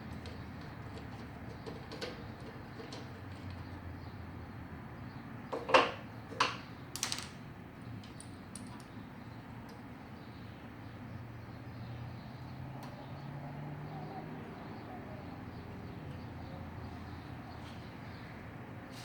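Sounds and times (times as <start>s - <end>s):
light clicks of metal parts: 0.0s - 3.8s, 5.5s - 10.0s.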